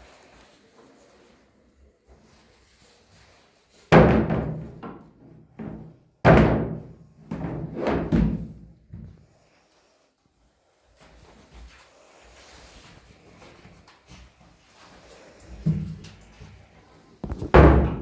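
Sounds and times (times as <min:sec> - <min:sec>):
chairs clattering and banging: 0:03.9 - 0:09.2, 0:17.2 - 0:18.0.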